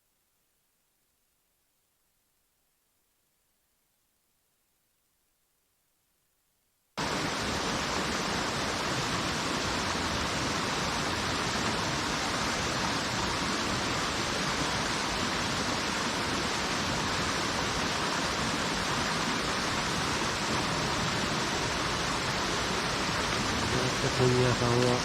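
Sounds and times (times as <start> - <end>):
rushing water: 7.0 - 25.0.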